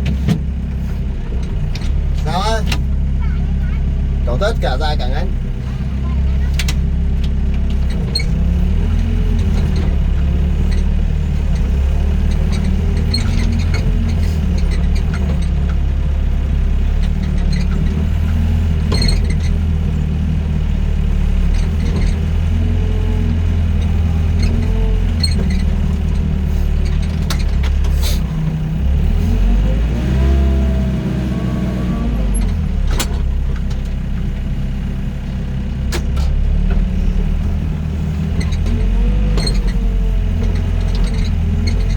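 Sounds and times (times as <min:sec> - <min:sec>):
excavator diesel engine running: 0:00.0 - 0:41.9.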